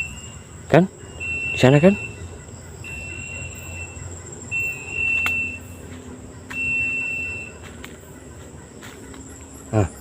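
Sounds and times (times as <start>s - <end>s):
bird whistled call: 1.0s - 5.8s, 6.5s - 7.6s.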